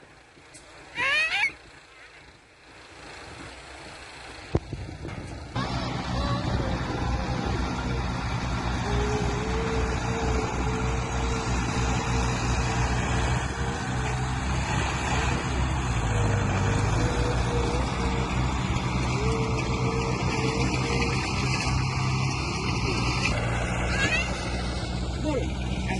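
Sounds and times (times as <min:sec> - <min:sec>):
diesel engine rumble: 0:00.0 - 0:25.9
thin wavering whine: 0:05.6 - 0:14.2.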